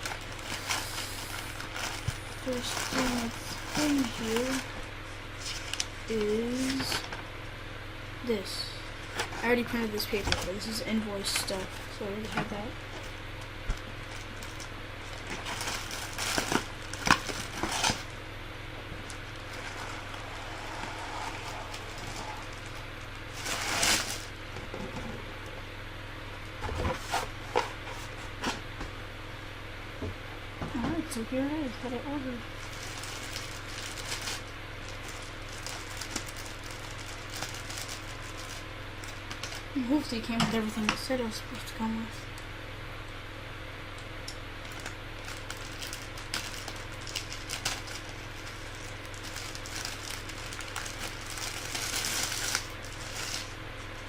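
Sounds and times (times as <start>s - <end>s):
packaging crinkling and rustling: 0.0s - 4.7s, 5.4s - 7.2s, 13.0s - 18.1s, 21.3s - 24.3s, 32.6s - 39.7s, 44.6s - 53.6s
faint low hum: 0.0s - 54.0s.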